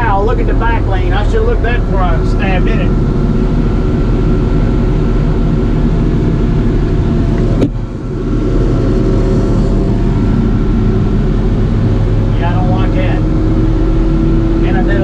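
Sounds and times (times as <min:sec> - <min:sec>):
logging machine engine running: 0:00.0 - 0:15.0.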